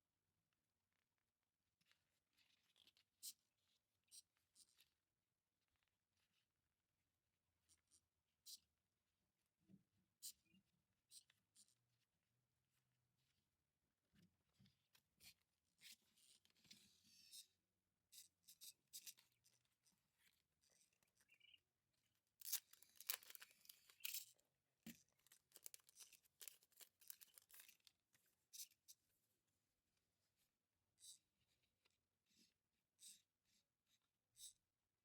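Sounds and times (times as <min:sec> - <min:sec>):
packaging and paper rustling: 0:22.4 - 0:24.0, 0:25.2 - 0:27.9.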